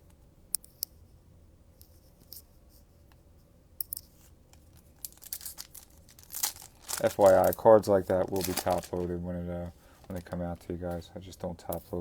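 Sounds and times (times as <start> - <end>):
wrapper tearing and crinkling: 5.0 - 9.2.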